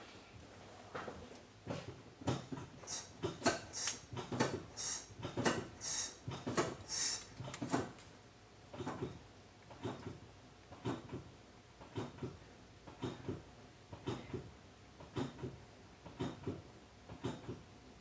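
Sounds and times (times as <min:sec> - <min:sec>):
brake pedal being pumped: 0:02.5 - 0:07.9
short bursts of hiss: 0:04.8 - 0:05.1, 0:05.8 - 0:06.2, 0:06.9 - 0:07.3.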